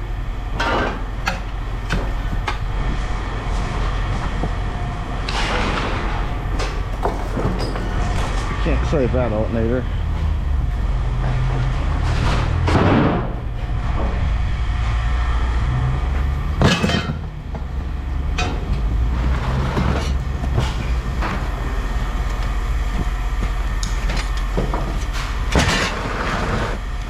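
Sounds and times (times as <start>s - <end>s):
scrap metal clanks and scrapes: 6.5s - 8.6s.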